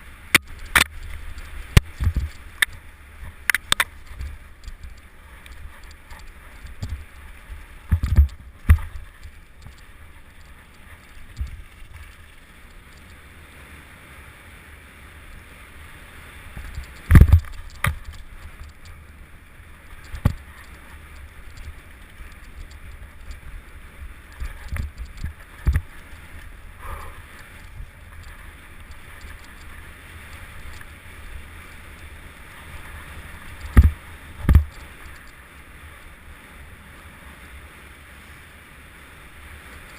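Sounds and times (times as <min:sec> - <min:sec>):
bike tyre noise: 0:00.0 - 0:13.5, 0:15.4 - 0:37.0
hard thumps from bumps: 0:17.1 - 0:18.1, 0:33.7 - 0:34.7.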